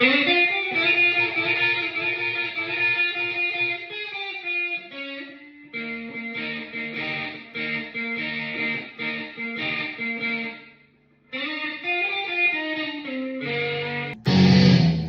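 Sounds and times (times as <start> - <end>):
electric guitar notes: 0.0 - 15.0.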